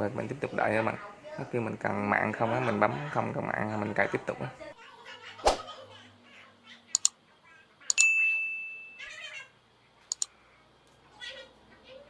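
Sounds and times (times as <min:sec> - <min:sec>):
computer mouse clicks: 0:07.0 - 0:07.2, 0:10.1 - 0:10.3
ringing ding: 0:07.9 - 0:09.0.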